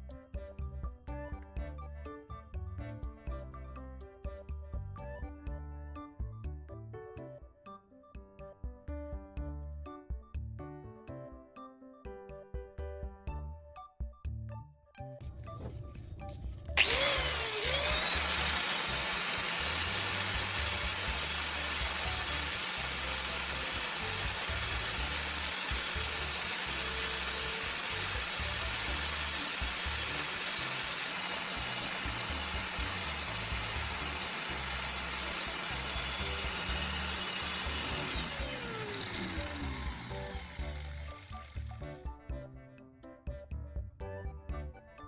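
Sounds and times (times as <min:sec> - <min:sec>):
electric power tool whining: 0:16.8 - 0:42.0.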